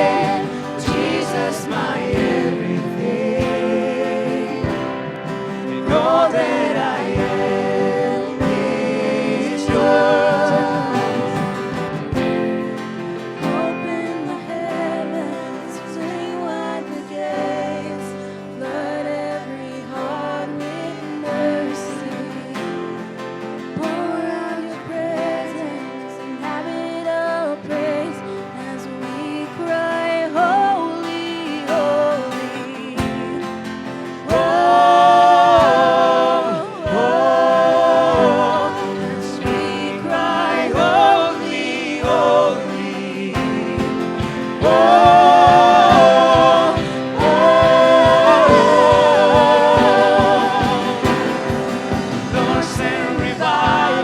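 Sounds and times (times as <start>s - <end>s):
steady drum beat: 0.0s - 12.7s, 34.3s - 36.3s, 36.9s - 54.0s
guitar and band: 0.0s - 54.0s
voices singing worship song: 0.0s - 54.0s.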